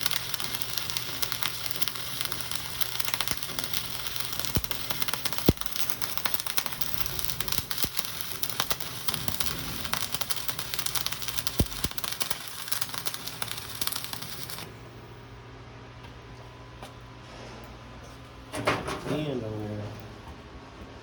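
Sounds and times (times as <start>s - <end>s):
welding arc pops: 0.0s - 14.8s
welding arc crackling: 0.0s - 14.9s.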